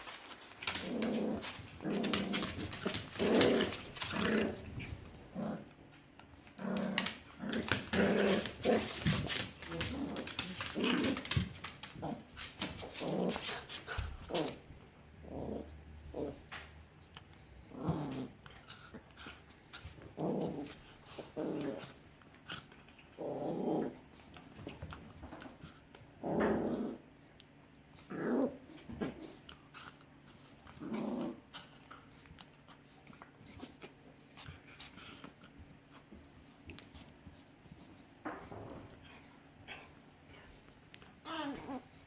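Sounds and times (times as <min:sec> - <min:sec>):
dogs growling: 0:00.5 - 0:16.7, 0:17.4 - 0:27.2, 0:28.0 - 0:37.1, 0:37.8 - 0:42.0.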